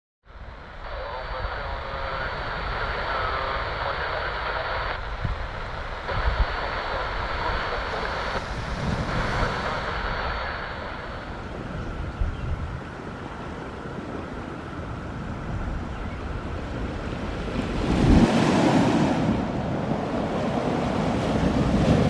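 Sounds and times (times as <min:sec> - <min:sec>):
jet engines rushing: 0:05.8 - 0:22.0
wind buffeting microphone: 0:08.0 - 0:22.0.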